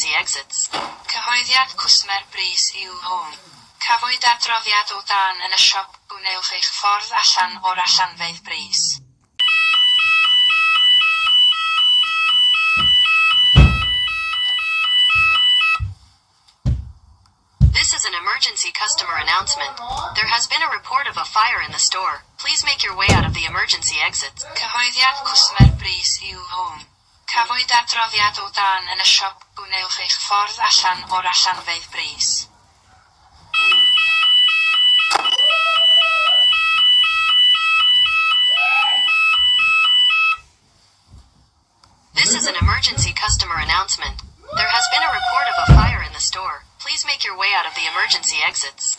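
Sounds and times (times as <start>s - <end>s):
evacuation announcements: 0.0s - 16.0s, 17.6s - 32.5s, 33.6s - 40.4s, 42.2s - 48.9s
fire alarm two-tone alert: 9.4s - 16.0s, 22.5s - 25.0s, 33.6s - 40.5s
heavy thump: 12.8s - 14.2s, 16.6s - 18.0s, 23.0s - 24.2s, 25.6s - 26.2s, 42.2s - 44.8s, 45.6s - 46.4s.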